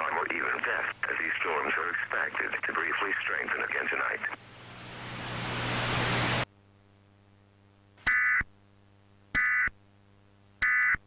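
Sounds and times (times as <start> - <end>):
static hiss: 0.0 - 6.5.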